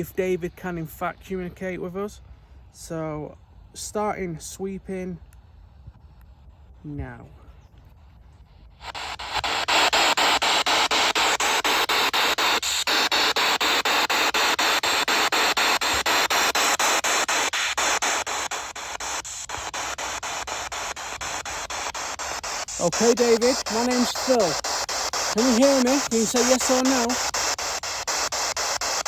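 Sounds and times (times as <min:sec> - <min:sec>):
pulsing radio static: 0:06.6 - 0:29.0.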